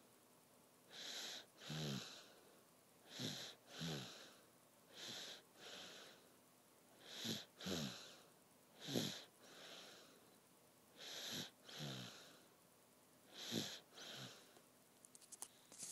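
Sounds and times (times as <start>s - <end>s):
person snoring: 1.0s - 2.3s, 3.1s - 4.4s, 7.0s - 8.2s, 8.8s - 9.9s, 11.0s - 12.5s, 13.3s - 14.5s.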